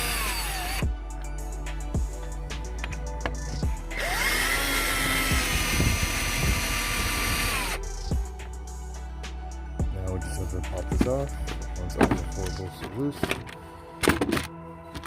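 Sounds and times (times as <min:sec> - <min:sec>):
drill clicks: 0:00.0 - 0:00.8, 0:02.8 - 0:07.8
cordless drill motor whining: 0:00.0 - 0:00.9, 0:03.8 - 0:07.8.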